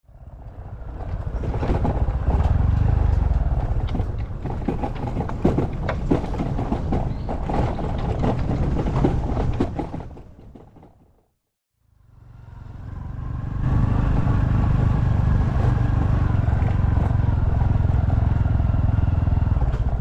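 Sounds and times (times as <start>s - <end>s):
knocks and rattles: 0.9s - 11.2s
motorbike engine running: 12.1s - 20.0s.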